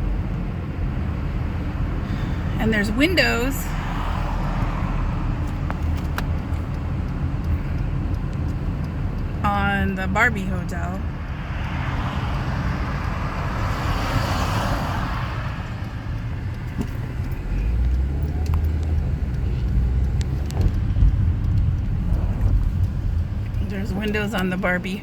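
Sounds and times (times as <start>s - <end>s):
car passing with whoosh: 0.0s - 8.2s, 11.0s - 23.6s
low traffic rumble: 0.0s - 25.0s.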